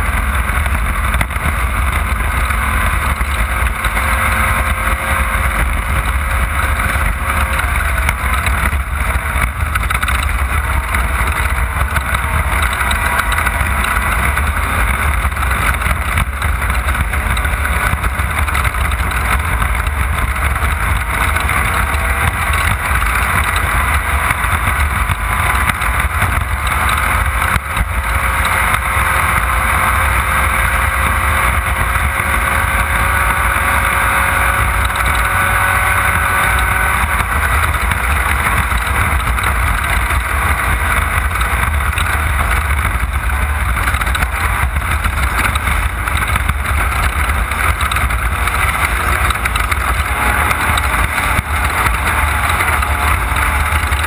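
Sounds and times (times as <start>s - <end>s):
heavy chassis rumble: 0.0s - 54.0s
race car engine running hard: 0.0s - 54.0s.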